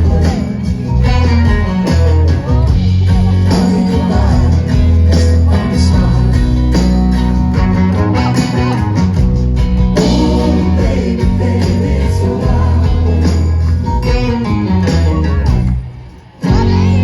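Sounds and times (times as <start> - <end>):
person singing: 0.0 - 7.5, 10.0 - 14.5, 16.4 - 17.0
live band music: 0.0 - 17.0.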